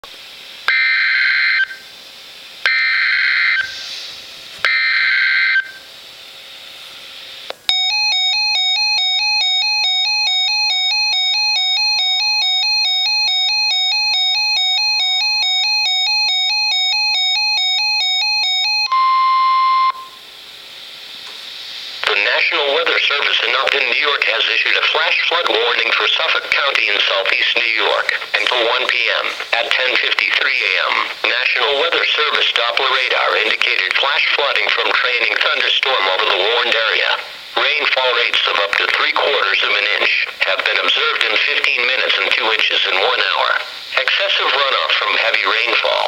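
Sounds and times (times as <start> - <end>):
steady attention tone: 2.6 - 46.0.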